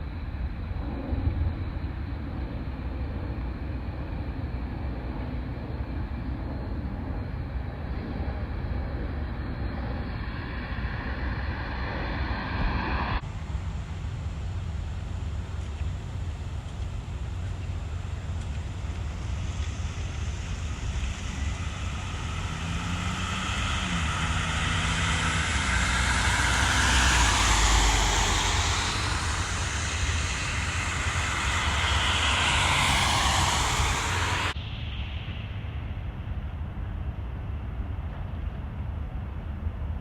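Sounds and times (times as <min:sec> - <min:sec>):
vehicle passing with rushing noise: 0:18.3 - 0:36.2.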